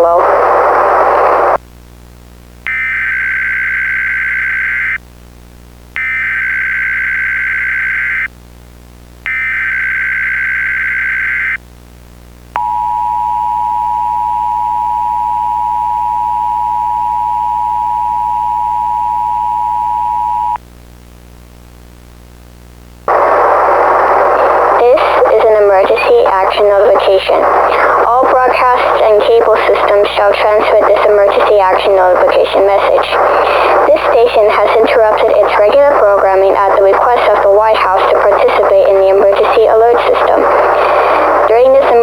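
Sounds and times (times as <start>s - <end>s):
digital data bursts: 24.2s - 42.0s.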